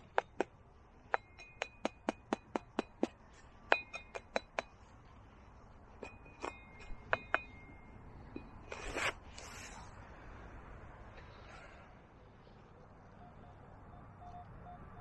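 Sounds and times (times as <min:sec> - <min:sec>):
sharp metallic clinks: 0:01.1 - 0:03.0, 0:06.0 - 0:08.6
scraping rustle: 0:08.6 - 0:10.0.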